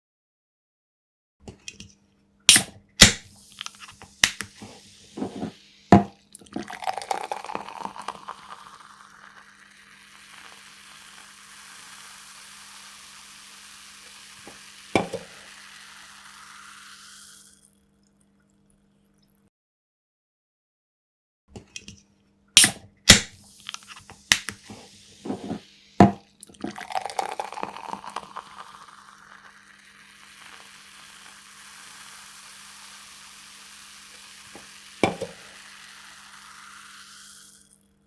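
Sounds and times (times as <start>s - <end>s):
bottle cap twisting clicks: 2.5s - 8.0s, 22.6s - 28.2s
fizzing hiss: 2.5s - 17.7s, 22.6s - 37.9s
fizzy drink pouring: 2.5s - 18.3s, 22.6s - 38.0s.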